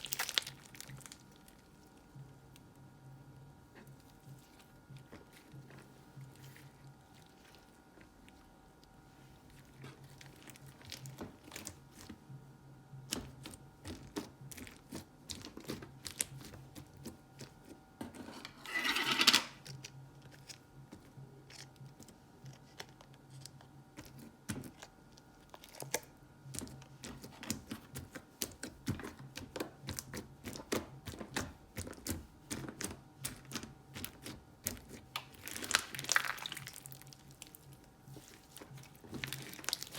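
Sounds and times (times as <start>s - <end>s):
faint steady hum: 0.0s - 39.9s.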